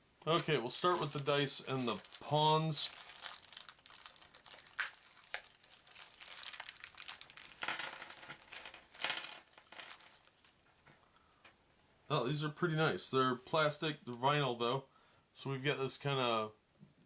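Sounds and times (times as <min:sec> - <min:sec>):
plastic bag crinkling: 0:00.3 - 0:11.0.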